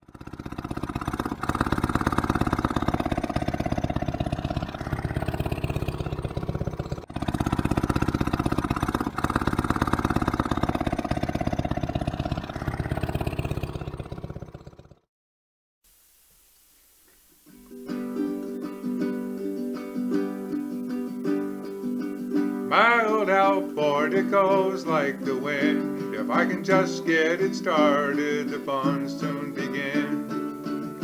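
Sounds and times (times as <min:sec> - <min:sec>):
outboard motor running: 0:00.0 - 0:15.0, 0:22.7 - 0:28.7.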